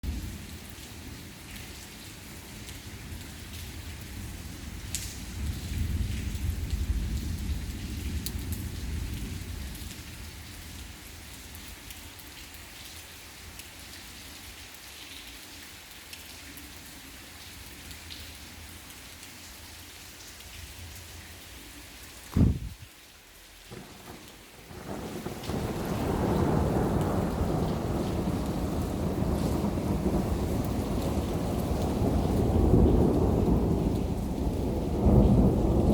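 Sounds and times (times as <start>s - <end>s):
steady rain: 0.0s - 35.9s
loud low thump: 22.3s - 22.8s
thunder rumble: 22.3s - 22.9s, 23.7s - 35.9s.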